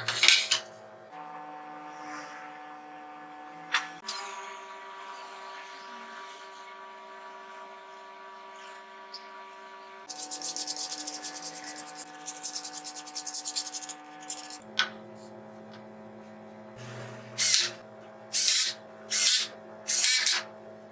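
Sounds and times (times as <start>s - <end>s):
sandpaper rubbing on wood: 10.1s - 14.6s.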